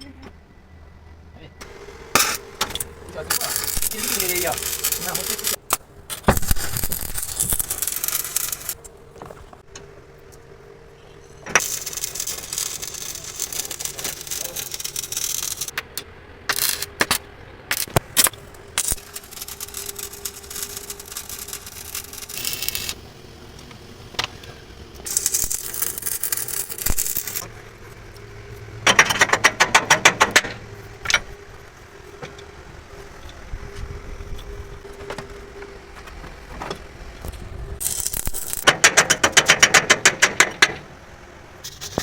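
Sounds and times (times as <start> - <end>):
steady hum: 0.5 - 28.8
air hissing bursts: 2.1 - 8.8, 11.6 - 15.7, 16.5 - 23.0, 24.3 - 27.4, 41.6 - 42.0
rapid rattling blows: 2.2 - 9.6, 11.6 - 15.7, 16.5 - 23.0, 25.0 - 27.5.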